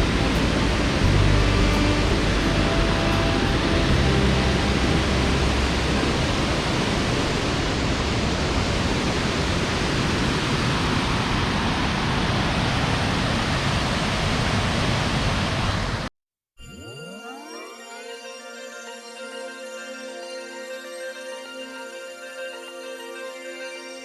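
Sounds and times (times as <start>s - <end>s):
waterfall roaring: 0.0s - 16.1s.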